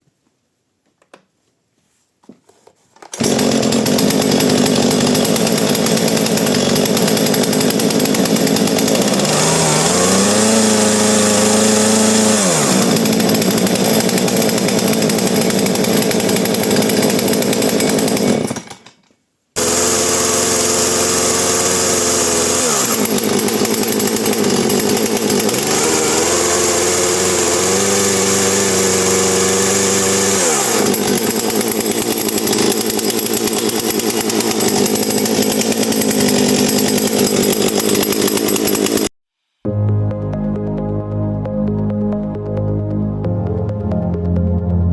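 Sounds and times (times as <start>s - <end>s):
chainsaw idling and revving: 3.1s - 19.0s, 19.6s - 39.2s.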